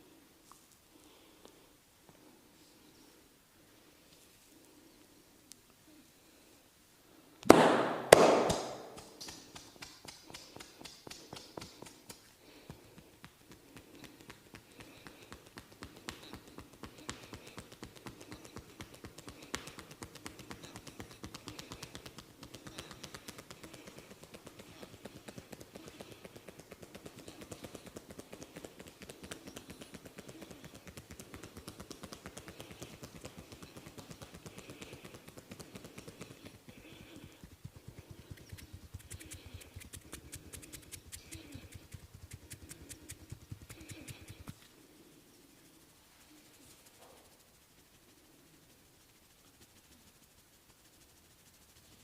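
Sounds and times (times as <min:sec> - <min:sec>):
fast light tapping on head: 0:07.4 - 0:44.6.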